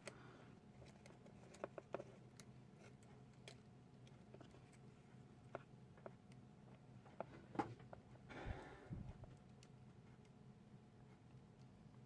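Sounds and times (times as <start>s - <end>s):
small clicks and taps: 0.8s - 8.1s.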